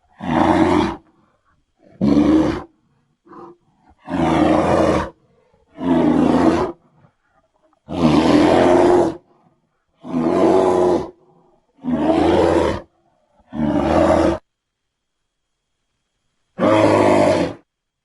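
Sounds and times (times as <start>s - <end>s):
monster roars: 1.9s - 2.7s, 3.4s - 5.1s, 5.8s - 6.8s, 7.9s - 9.2s, 10.0s - 11.2s, 11.8s - 12.9s.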